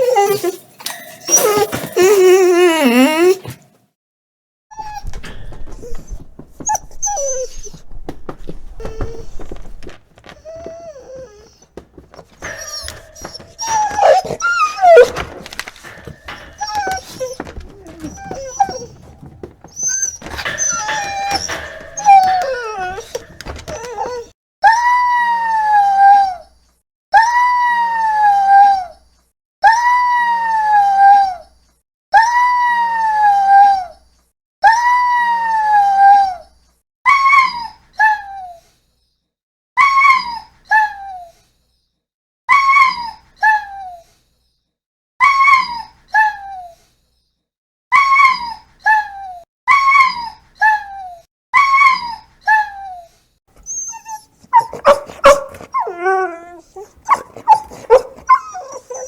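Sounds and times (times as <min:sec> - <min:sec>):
dog whimpering: 0:00.0 - 0:03.6, 0:04.8 - 0:07.9, 0:10.3 - 0:26.5, 0:45.2 - 0:46.8, 0:48.0 - 0:59.0
dog whining: 0:00.0 - 0:03.6, 0:04.7 - 0:08.1, 0:08.8 - 0:09.7, 0:10.3 - 0:26.6, 0:45.2 - 0:46.8, 0:47.9 - 0:59.0.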